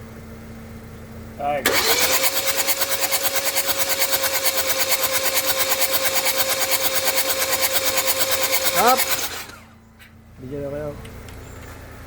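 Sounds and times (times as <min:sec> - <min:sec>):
starter motor cranking engine: 0:01.6 - 0:09.8.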